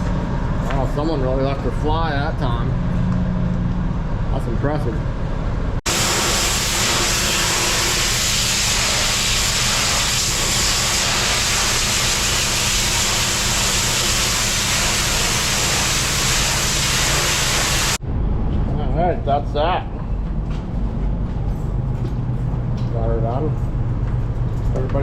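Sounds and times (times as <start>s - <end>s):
low machine hum: 0.0s - 8.2s, 13.2s - 25.0s
pressure washer jet hiss: 5.9s - 18.0s.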